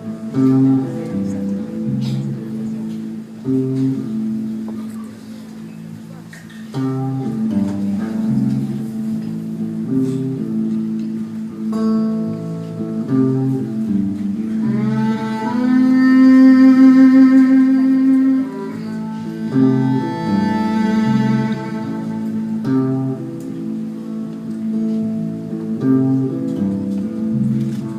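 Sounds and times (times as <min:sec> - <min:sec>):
picked guitar accompaniment: 0:00.0 - 0:27.9
sustained melody line: 0:12.5 - 0:27.6.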